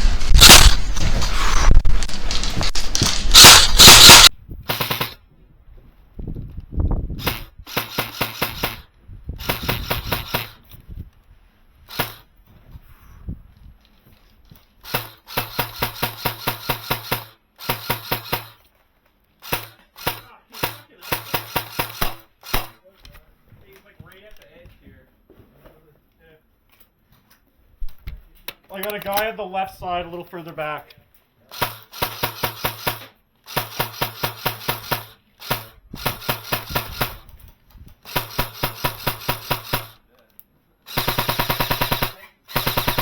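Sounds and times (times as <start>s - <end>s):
loud rushing noise: 0.0s - 4.3s
airsoft gun firing bursts: 0.0s - 5.2s, 7.2s - 10.6s, 11.9s - 12.2s, 14.8s - 18.6s, 19.4s - 22.8s, 31.5s - 37.3s, 38.0s - 40.0s, 40.9s - 43.0s.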